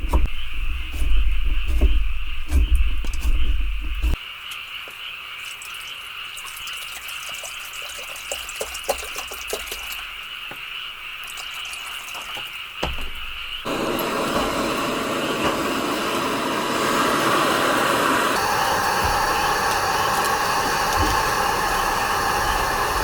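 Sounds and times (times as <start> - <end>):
heavy low rumble: 0.0 - 4.2
frogs calling: 0.0 - 14.8, 18.4 - 23.0.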